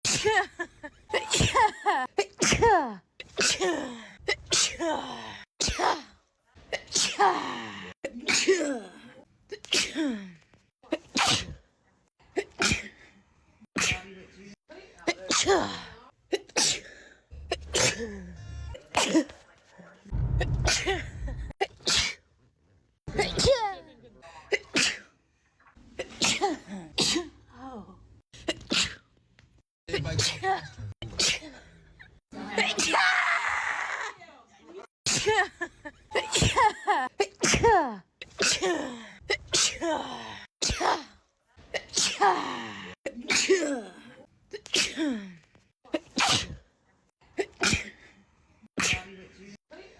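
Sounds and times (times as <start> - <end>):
person sneezing: 11.0 - 11.6, 16.4 - 18.2, 36.2 - 37.8, 46.2 - 46.6.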